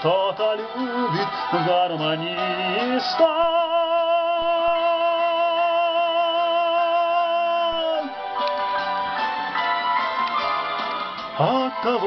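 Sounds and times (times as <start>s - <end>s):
person singing karaoke: 0.0s - 8.6s, 11.2s - 12.0s
pop backing track: 0.0s - 12.0s.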